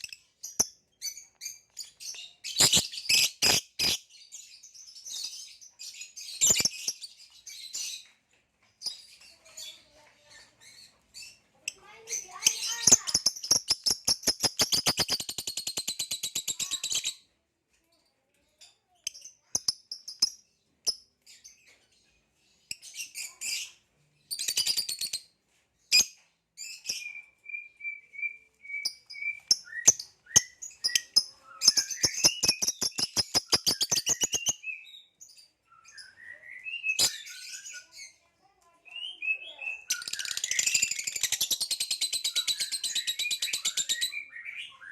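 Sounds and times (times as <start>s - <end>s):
lovebird clicking chatter: 2.5s - 4.0s, 12.3s - 17.2s, 24.3s - 25.2s, 28.8s - 34.6s, 39.9s - 44.0s
lovebird short chirps: 28.2s - 34.9s.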